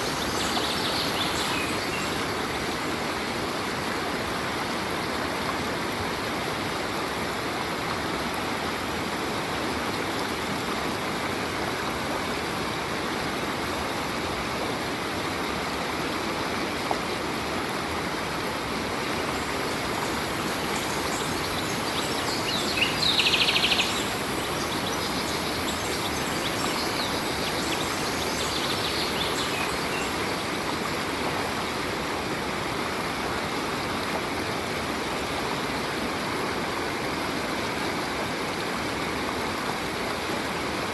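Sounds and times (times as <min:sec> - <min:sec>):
stream running over rocks: 0:00.0 - 0:40.9
bird trill: 0:20.1 - 0:30.2.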